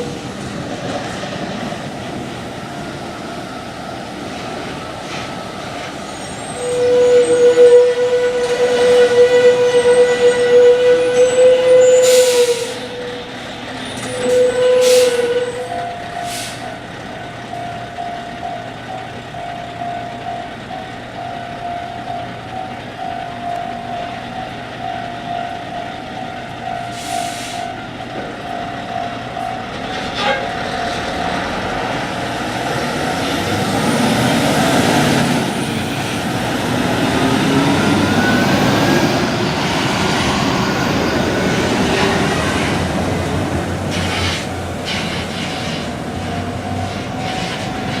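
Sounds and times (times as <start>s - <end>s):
level-crossing warning signal: 2.6s - 48.0s
short horn-like tone: 6.6s - 13.1s.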